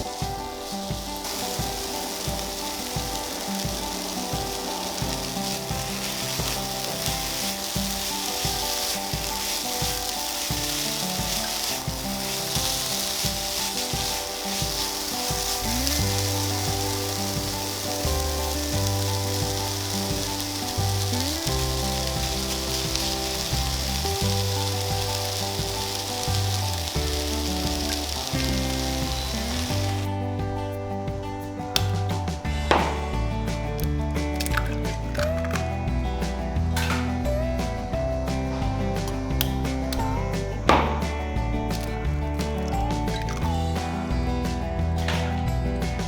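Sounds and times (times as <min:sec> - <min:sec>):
food sizzling in a frying pan: 0:00.0 - 0:30.2
background music: 0:00.0 - 0:46.0.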